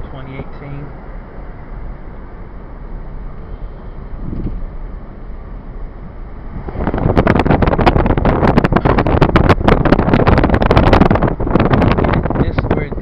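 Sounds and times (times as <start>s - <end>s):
car road rumble: 0.0s - 13.0s
crackling rush with clicks: 6.7s - 13.0s.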